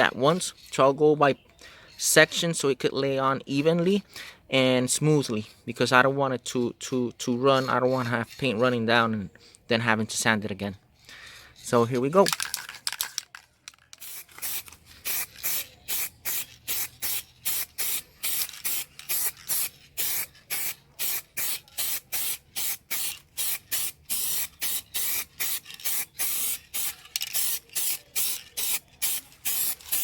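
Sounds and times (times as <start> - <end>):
spray paint can hissing: 13.9 - 30.0.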